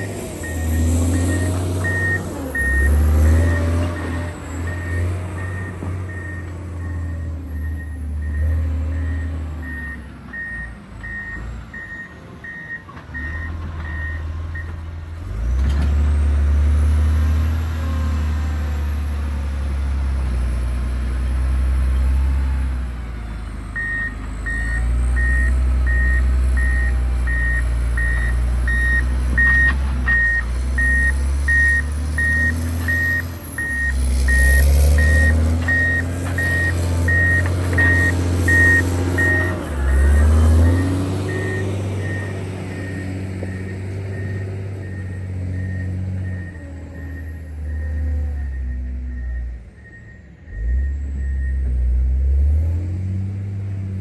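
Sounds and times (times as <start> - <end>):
back-up alarm beeping: 0.0 - 14.7, 23.8 - 51.7
diesel engine running: 0.0 - 54.0.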